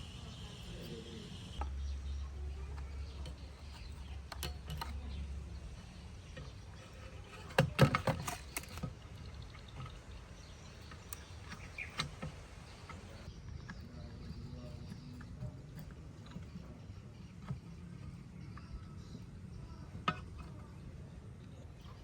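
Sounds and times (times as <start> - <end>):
low steady hum: 0.0 - 22.0
clicks and knocks of hand-work: 2.8 - 5.6, 6.3 - 10.0.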